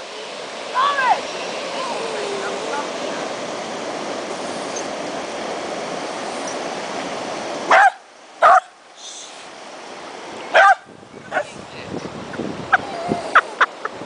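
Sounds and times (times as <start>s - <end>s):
falling water rushing: 0.0s - 14.0s
dog barking: 7.7s - 8.7s, 10.5s - 11.5s.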